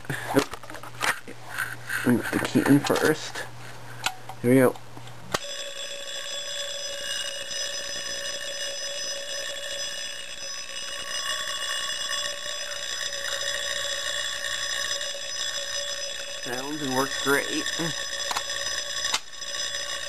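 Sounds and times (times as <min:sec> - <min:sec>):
fire alarm bell ringing: 0:05.4 - 0:20.0.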